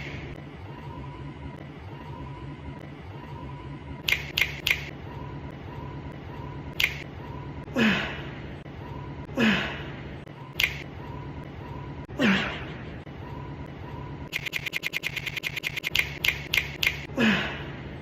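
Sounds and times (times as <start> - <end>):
person grunting: 7.7 - 8.3, 9.3 - 9.9, 12.1 - 12.8, 17.1 - 17.7.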